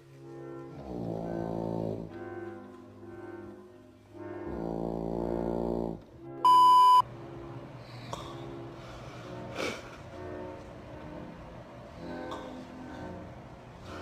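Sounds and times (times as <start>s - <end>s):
loud horn-like snoring: 0.8s - 2.1s, 4.4s - 6.0s
electronic beep: 6.5s - 7.0s.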